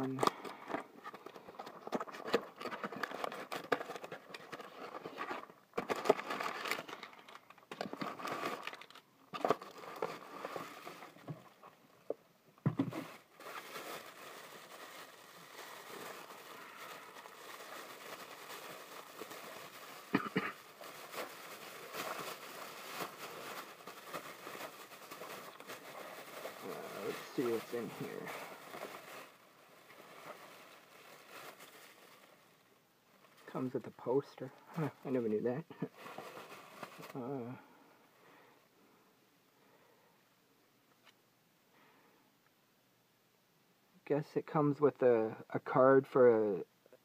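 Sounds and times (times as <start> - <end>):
packaging crinkling and tearing: 0.0 - 11.4, 12.8 - 32.4, 33.3 - 37.5.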